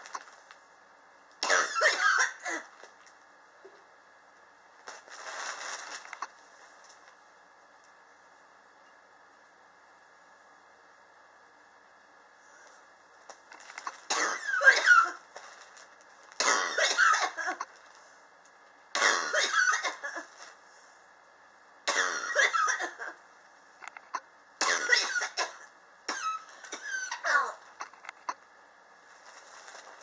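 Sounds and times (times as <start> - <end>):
person coughing: 1.4 - 2.8, 14.1 - 15.2, 16.4 - 17.7, 19.0 - 20.4, 21.9 - 23.2, 24.6 - 27.9.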